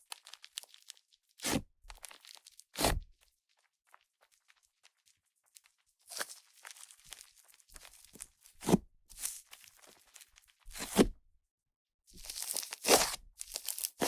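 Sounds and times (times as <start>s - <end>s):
slime squished by hand: 0.0s - 3.2s, 3.9s - 11.0s
air popping and crackling in slime: 0.0s - 8.5s.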